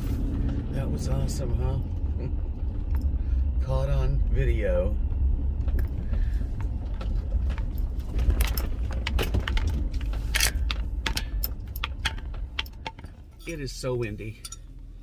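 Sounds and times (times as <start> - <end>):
sharp clicks and clinks: 10.3 - 14.7.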